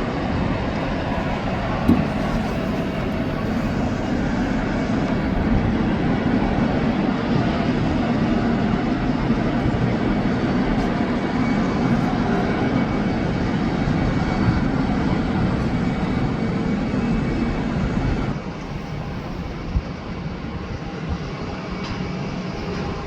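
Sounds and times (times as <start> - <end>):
airplane engines rumbling: 0.0 - 23.0.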